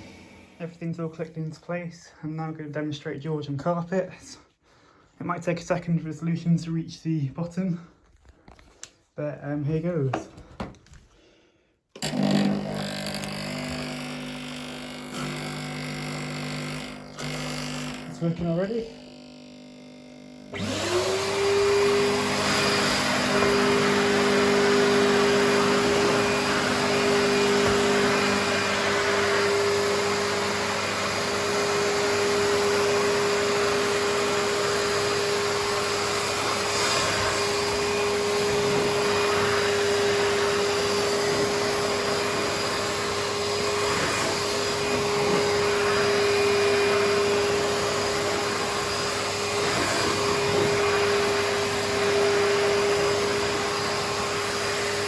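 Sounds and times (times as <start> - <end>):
vacuum cleaner motor whining: 0.0 - 0.8, 11.9 - 55.0.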